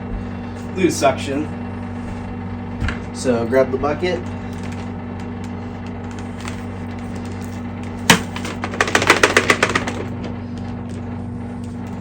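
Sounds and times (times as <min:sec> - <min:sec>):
vacuum cleaner humming: 0:00.0 - 0:12.0
dust bin clicks and rattles: 0:08.1 - 0:11.0.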